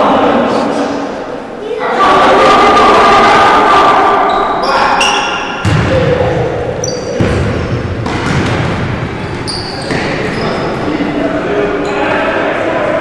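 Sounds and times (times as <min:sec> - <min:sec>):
people shouting: 0:01.6 - 0:06.9
ball thuds: 0:05.6 - 0:06.4, 0:07.2 - 0:10.1
shoe squeaks on court floor: 0:06.8 - 0:07.7, 0:09.2 - 0:10.8.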